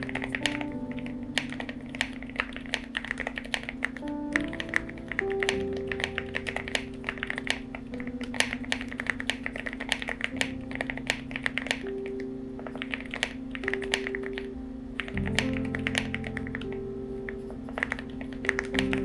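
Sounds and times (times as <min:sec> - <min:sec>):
mechanical keyboard typing: 0:00.0 - 0:16.7, 0:17.4 - 0:19.0
background music with held notes: 0:00.0 - 0:19.0.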